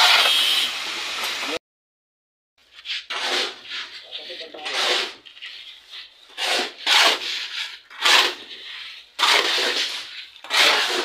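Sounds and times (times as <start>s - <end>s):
rough scraping on wood: 2.6s - 11.0s.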